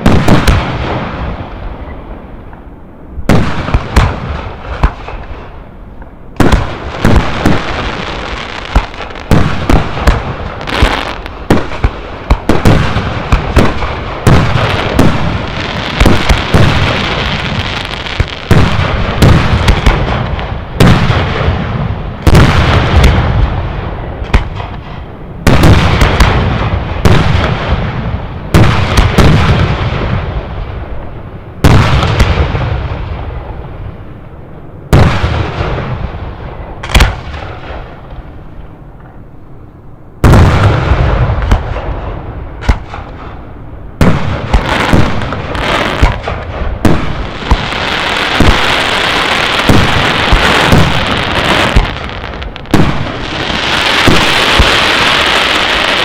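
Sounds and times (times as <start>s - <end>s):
firework crackling: 6.4s - 30.3s, 44.0s - 56.0s.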